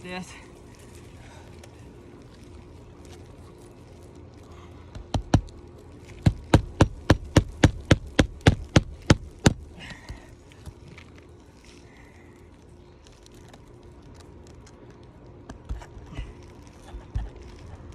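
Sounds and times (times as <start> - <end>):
hammer striking a nail: 6.2 - 9.6.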